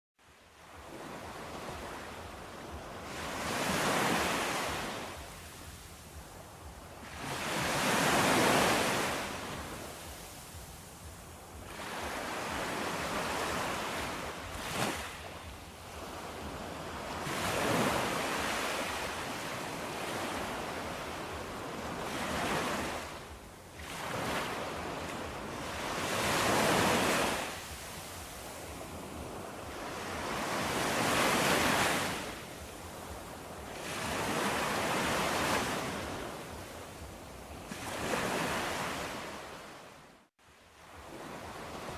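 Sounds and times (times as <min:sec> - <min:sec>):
ocean waves breaking: 0:00.2 - 0:41.9.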